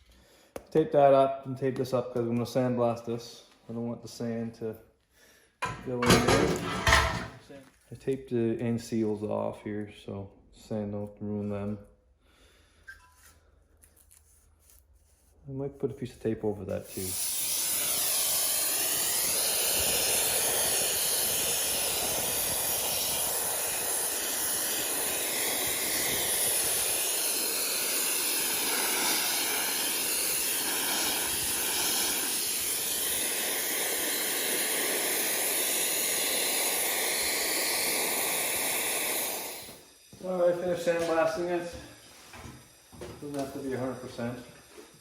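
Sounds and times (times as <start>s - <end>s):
sandblaster hissing: 5.6s - 7.4s, 16.7s - 45.0s.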